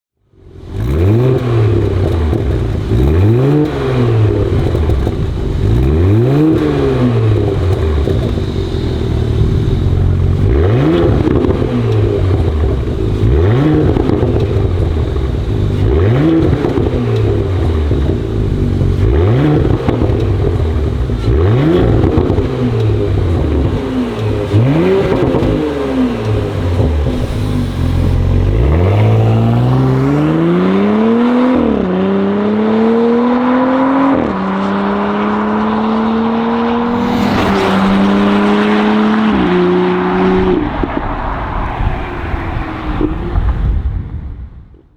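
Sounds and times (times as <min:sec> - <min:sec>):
car engine revving: 0:00.6 - 0:43.8
car engine idling: 0:01.8 - 0:30.7.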